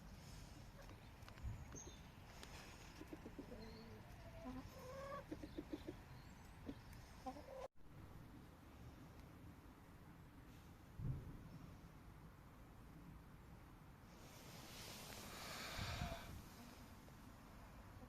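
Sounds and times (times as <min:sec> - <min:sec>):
chickens clucking: 0:02.7 - 0:07.7
thump: 0:11.0 - 0:11.4.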